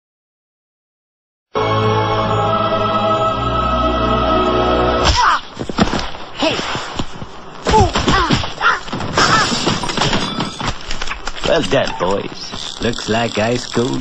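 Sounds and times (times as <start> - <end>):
held music chord: 1.6 - 5.0.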